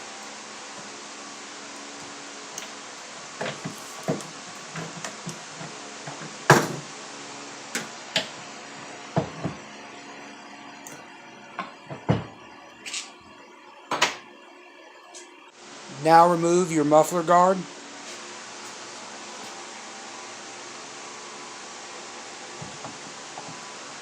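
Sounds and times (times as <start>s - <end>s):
steady hum: 0.0s - 24.0s.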